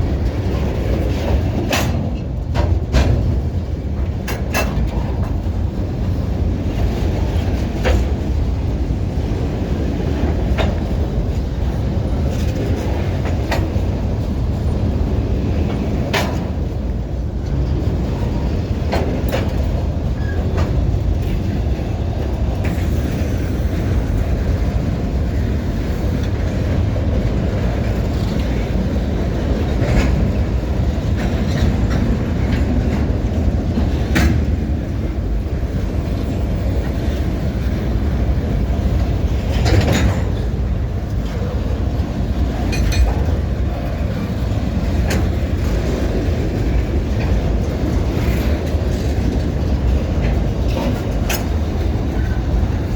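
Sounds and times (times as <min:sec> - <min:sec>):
train rumbling on track: 0:00.0 - 0:52.9
wheels clanking over rail joints: 0:00.0 - 0:52.9.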